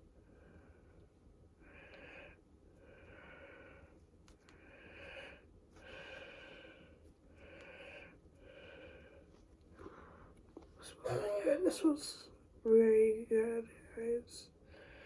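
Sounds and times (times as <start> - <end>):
soft breathing: 0.1 - 11.2, 14.5 - 15.0.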